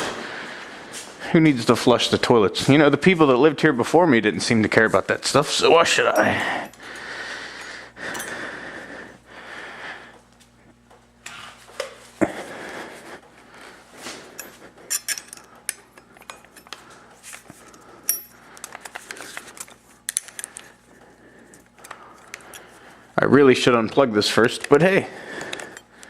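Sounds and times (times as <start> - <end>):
low steady hum: 0.0 - 26.0
metal tools clinking: 5.9 - 7.0, 14.3 - 16.8, 18.0 - 20.7.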